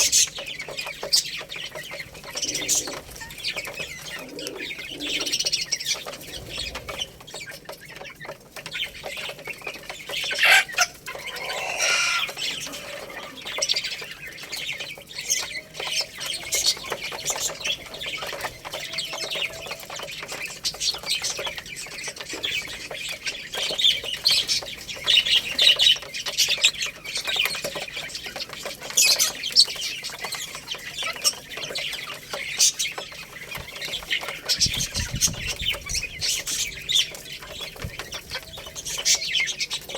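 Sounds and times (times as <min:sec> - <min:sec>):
chicks peeping and clucking: 0:00.0 - 0:39.9
loud long chicken call: 0:10.4 - 0:13.6.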